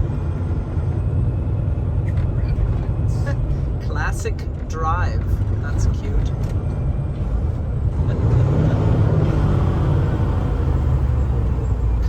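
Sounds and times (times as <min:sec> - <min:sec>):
road rumble: 0:00.0 - 0:12.0
truck diesel engine: 0:00.0 - 0:12.0.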